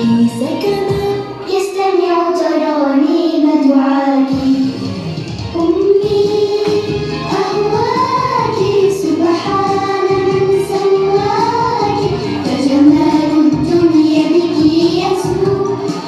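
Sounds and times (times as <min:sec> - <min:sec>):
music: 0:00.0 - 0:16.0
children singing: 0:05.6 - 0:16.0.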